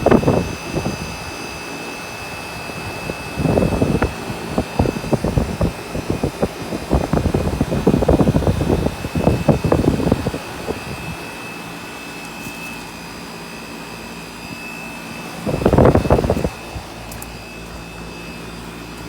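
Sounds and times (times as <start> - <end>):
wind buffeting microphone: 0.0 - 11.4, 15.3 - 17.8
air conditioner humming: 0.0 - 19.0.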